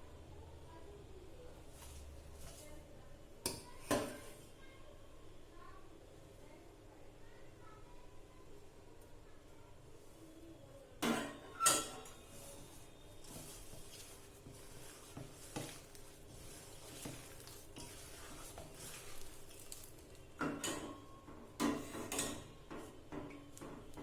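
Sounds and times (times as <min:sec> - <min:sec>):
stirring and scraping batter: 0:11.1 - 0:24.0.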